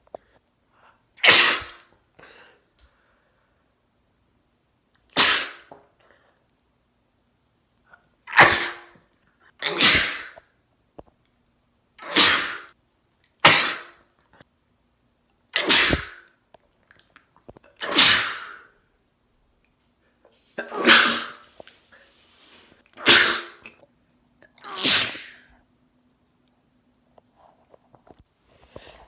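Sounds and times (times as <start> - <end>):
man sneezing: 1.2 - 1.8, 5.2 - 5.7, 8.3 - 8.9, 9.6 - 10.4, 12.0 - 12.7, 13.4 - 14.0, 15.6 - 16.2, 17.8 - 18.7, 20.6 - 21.5, 23.0 - 23.6, 24.6 - 25.5.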